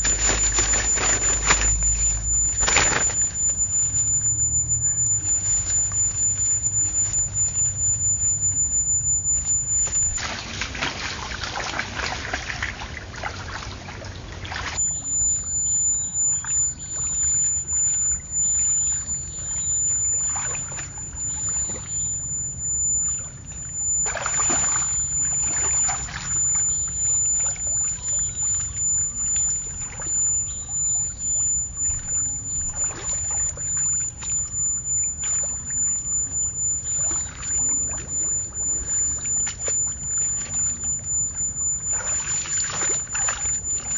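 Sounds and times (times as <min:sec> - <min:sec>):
steady low hum: 0:00.0 - 0:11.6, 0:12.8 - 0:43.9
water splashing and sloshing: 0:09.6 - 0:14.8, 0:19.4 - 0:30.7, 0:31.8 - 0:43.9.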